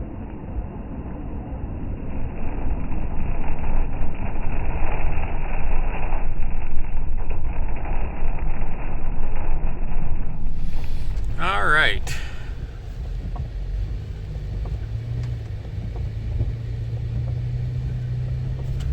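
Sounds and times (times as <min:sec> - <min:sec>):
vehicle engine and road rumble: 0:00.0 - 0:18.9.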